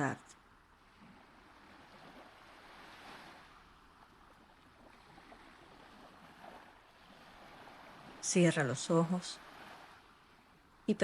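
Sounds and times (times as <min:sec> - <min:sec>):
faint sea waves washing: 0:00.0 - 0:11.0.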